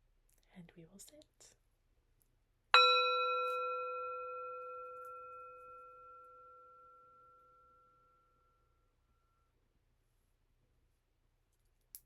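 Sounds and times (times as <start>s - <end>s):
meditation bell ringing: 2.8s - 9.5s.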